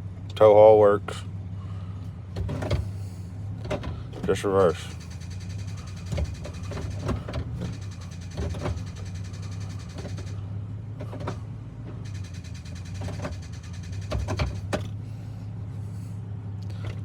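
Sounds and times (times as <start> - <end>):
engine running with low hum: 0.0 - 17.0
transmission clicks and knocks: 3.6 - 10.4, 11.0 - 15.0.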